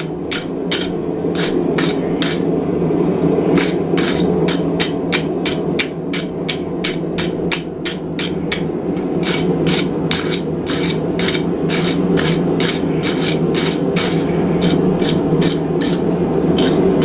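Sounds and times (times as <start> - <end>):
wire brush scrubbing steel: 0.0 - 2.5, 3.6 - 5.6, 9.2 - 17.0.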